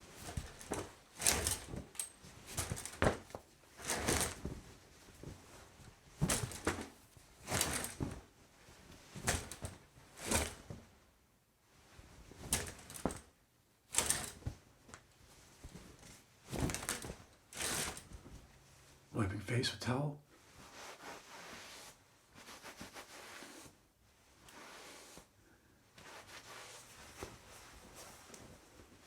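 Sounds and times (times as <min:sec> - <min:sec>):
cloth swishes: 0:00.0 - 0:11.1, 0:13.9 - 0:19.0, 0:20.4 - 0:29.0
shower curtain sliding on rod: 0:00.1 - 0:04.6, 0:06.2 - 0:08.3, 0:09.2 - 0:10.8, 0:13.9 - 0:14.6, 0:16.0 - 0:18.3, 0:20.5 - 0:25.4.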